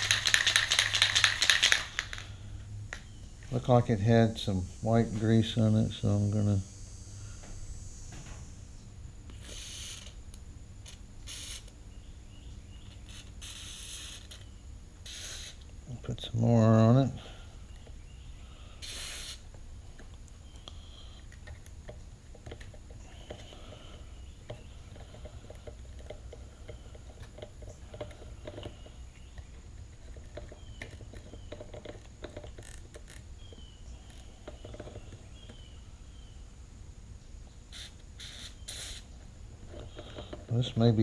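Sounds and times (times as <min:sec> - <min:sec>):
low steady hum: 0:00.0 - 0:41.0
light clicks taps and scrapes: 0:19.5 - 0:35.6, 0:39.6 - 0:40.8.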